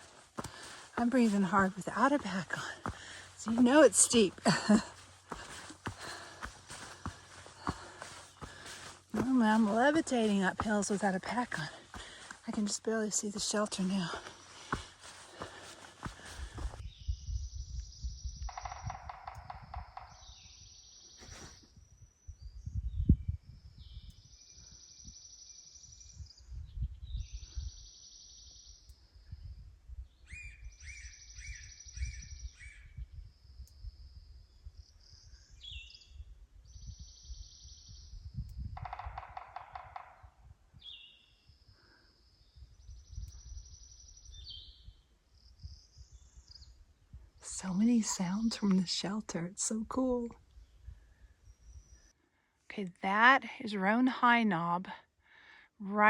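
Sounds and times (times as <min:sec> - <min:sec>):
footsteps on muddy trail: 0:00.0 - 0:16.8
songbirds singing: 0:00.0 - 0:54.7.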